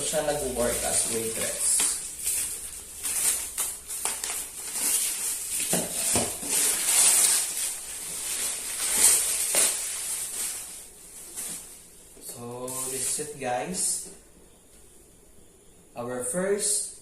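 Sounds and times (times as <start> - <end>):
plastic packaging crinkling: 0.0 - 11.9.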